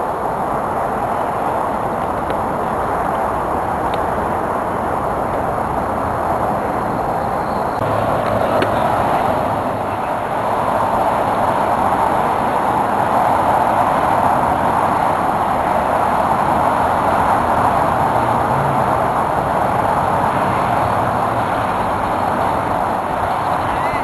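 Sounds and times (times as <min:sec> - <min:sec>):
wind and wheels rushing noise: 0:00.0 - 0:24.0.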